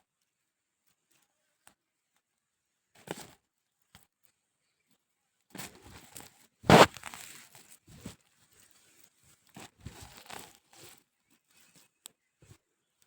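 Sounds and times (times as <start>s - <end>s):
soil crunching: 6.7s - 7.3s.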